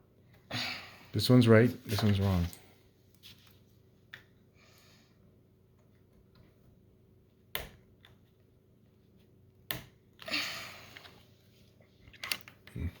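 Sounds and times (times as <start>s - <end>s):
short rustling: 1.4s - 3.8s.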